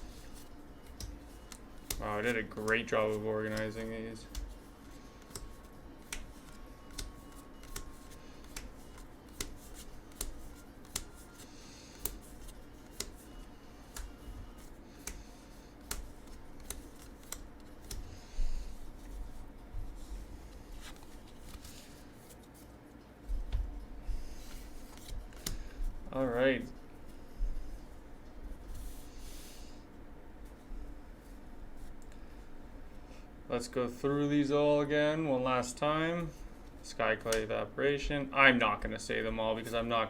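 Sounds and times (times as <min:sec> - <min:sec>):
cards sliding rustles: 0:00.0 - 0:22.8, 0:24.2 - 0:26.0, 0:28.6 - 0:29.8
cards clicking on a table: 0:00.9 - 0:13.2, 0:13.9 - 0:14.2, 0:14.9 - 0:18.2.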